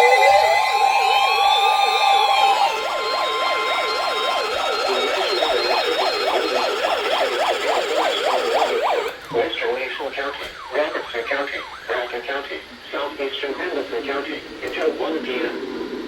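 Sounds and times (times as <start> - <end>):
fast warbling siren: 0.0 - 9.2, 10.6 - 12.3
slow wailing siren: 0.0 - 9.2, 10.4 - 12.2
steady high alert tones: 0.0 - 9.2.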